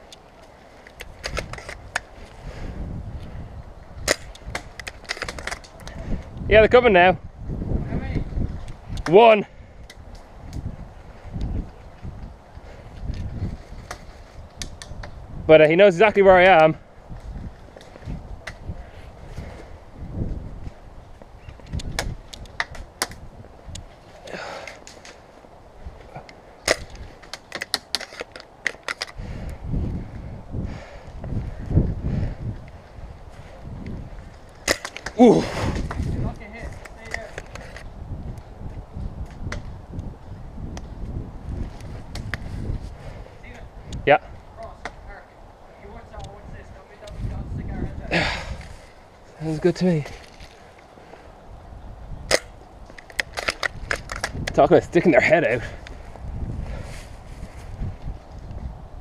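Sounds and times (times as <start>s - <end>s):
rustle of gear and movement: 0.0s - 6.4s, 45.8s - 51.8s, 52.8s - 58.8s
wind rumble on microphone: 0.0s - 27.3s, 28.5s - 59.0s.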